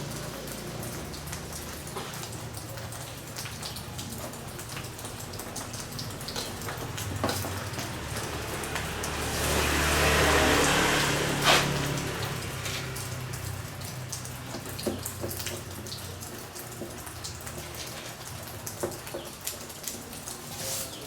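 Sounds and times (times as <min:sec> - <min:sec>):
rain falling: 0:00.0 - 0:21.0.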